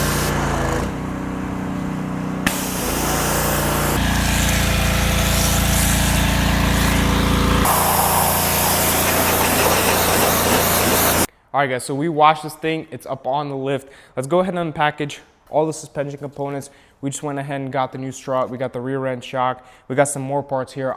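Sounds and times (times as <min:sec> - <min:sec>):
pressure washer running: 0:00.0 - 0:11.3.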